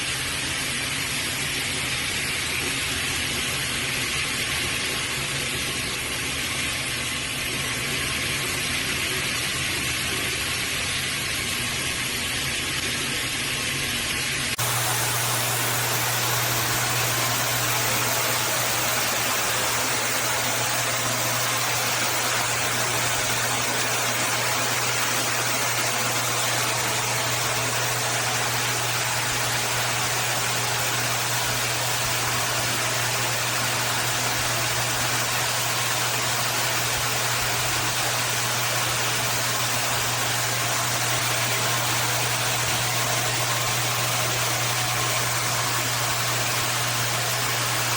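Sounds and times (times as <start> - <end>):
shower spray hissing: 14.6 - 31.0.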